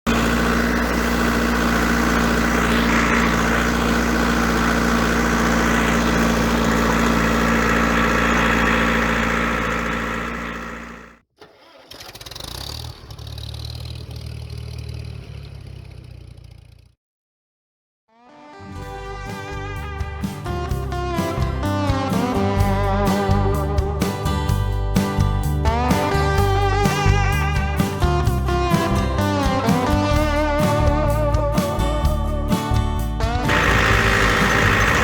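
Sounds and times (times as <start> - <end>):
quieter engine running: 0.0 - 11.2, 19.8 - 35.0
tractor engine running: 0.0 - 16.9, 20.4 - 35.0.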